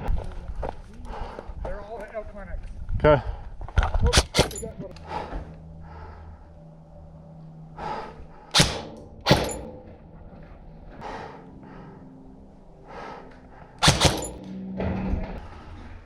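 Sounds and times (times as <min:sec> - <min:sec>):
airsoft gun shots: 0:08.6 - 0:09.7, 0:13.8 - 0:14.4.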